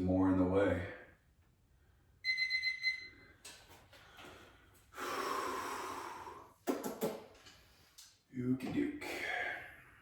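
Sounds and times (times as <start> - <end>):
man breathing hard: 4.0 - 6.6.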